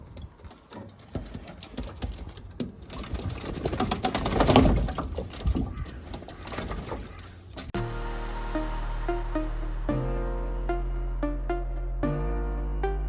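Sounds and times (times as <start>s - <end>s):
pigeons pattering and clicking: 0.0s - 7.6s.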